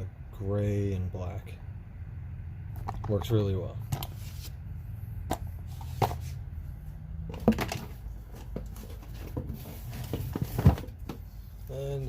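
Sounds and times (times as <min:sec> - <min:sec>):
low steady hum: 0:00.0 - 0:12.0
clicks and knocks of items: 0:07.3 - 0:11.2.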